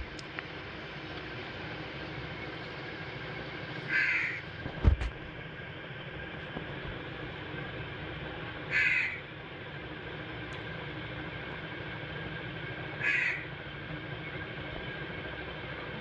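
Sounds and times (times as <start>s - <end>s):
harsh animal calls: 8.7s - 9.2s, 13.0s - 13.5s.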